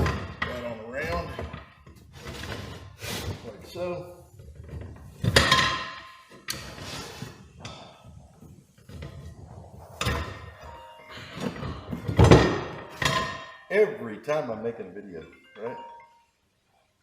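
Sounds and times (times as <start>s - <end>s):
phone ringtone: 10.6s - 12.0s, 15.1s - 16.6s.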